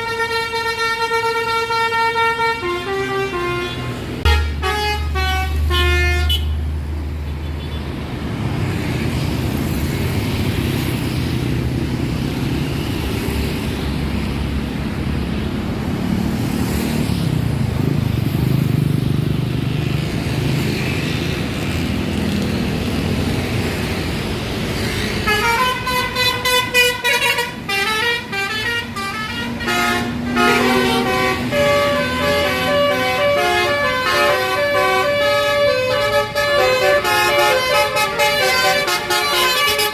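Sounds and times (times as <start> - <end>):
bus musical air horn tune: 0.0 - 6.6, 25.2 - 39.9
heavy vehicle rumble: 0.0 - 39.9.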